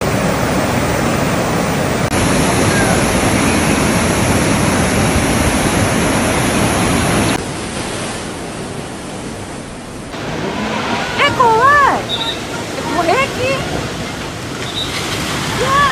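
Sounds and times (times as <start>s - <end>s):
floodwater rushing: 0.0s - 15.9s.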